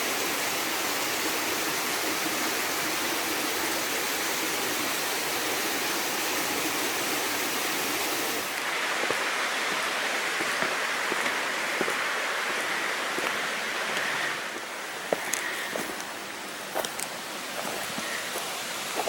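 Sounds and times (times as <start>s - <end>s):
running water: 0.0s - 19.0s.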